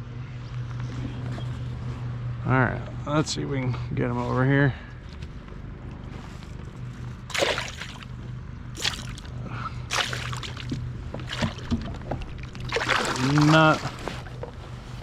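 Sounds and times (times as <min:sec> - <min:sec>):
steady low hum: 0:00.0 - 0:15.0
fish splashing in water: 0:07.3 - 0:08.2, 0:08.8 - 0:14.4.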